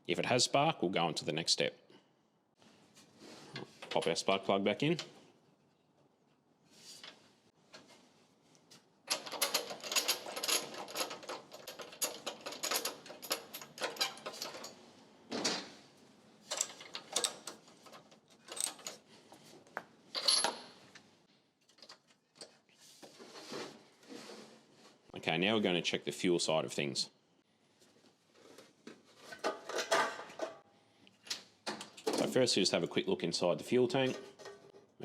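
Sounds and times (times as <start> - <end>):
metal clinking on metal: 9.1 - 14.8.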